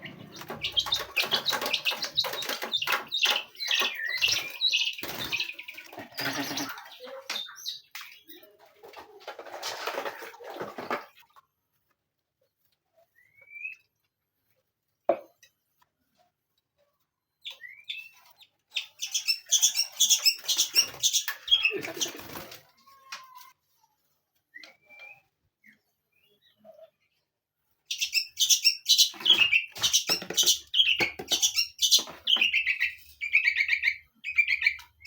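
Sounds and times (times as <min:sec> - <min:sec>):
wings fluttering and rustling: 0:00.0 - 0:07.4, 0:08.3 - 0:11.9, 0:18.2 - 0:23.4
songbirds chirping: 0:00.0 - 0:11.4, 0:17.0 - 0:23.4, 0:24.4 - 0:35.0.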